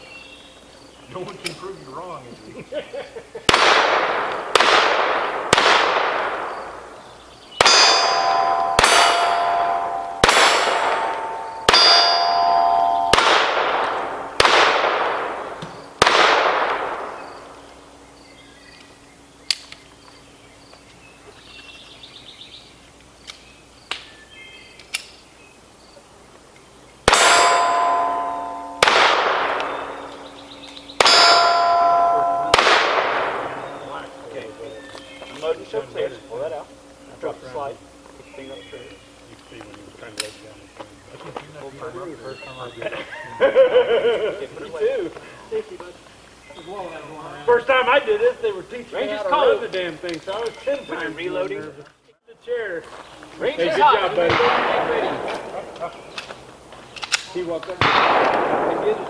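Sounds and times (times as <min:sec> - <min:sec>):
pistol shots: 0:03.5 - 0:18.0, 0:27.0 - 0:35.6, 0:54.2 - 0:59.0
steel plate ringing clang: 0:07.6 - 0:15.1, 0:27.1 - 0:39.1.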